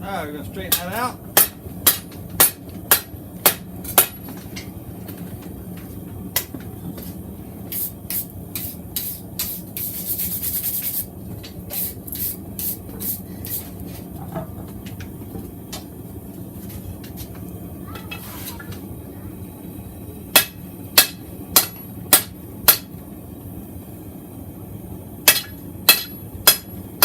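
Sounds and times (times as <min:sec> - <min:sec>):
steady hum: 0:00.0 - 0:27.0
hammer striking steel on anvil: 0:00.7 - 0:04.4, 0:20.3 - 0:22.9, 0:25.2 - 0:26.8
hiss: 0:07.7 - 0:11.1, 0:11.7 - 0:13.8.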